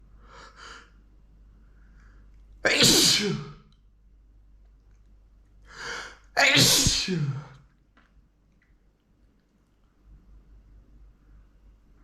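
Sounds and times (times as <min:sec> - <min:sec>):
man sneezing: 0:02.7 - 0:03.6, 0:06.4 - 0:07.6.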